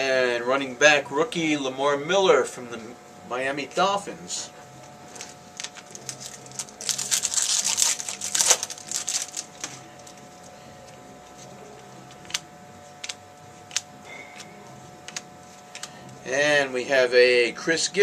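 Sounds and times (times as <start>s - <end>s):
wrapper tearing and crinkling: 5.2s - 10.5s.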